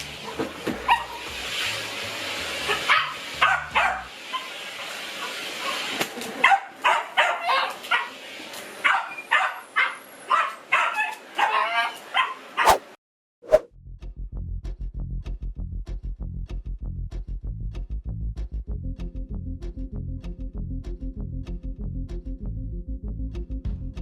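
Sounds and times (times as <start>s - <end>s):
dog barking and yipping: 2.7s - 4.5s, 6.4s - 8.1s, 8.8s - 12.8s.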